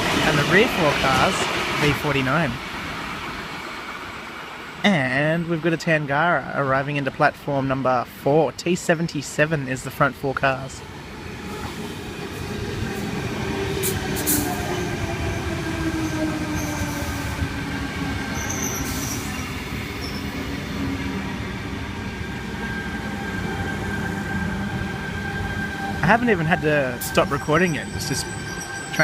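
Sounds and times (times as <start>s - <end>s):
train running noise: 0.0s - 29.0s
thin steady squeal: 18.3s - 20.4s, 25.2s - 29.0s.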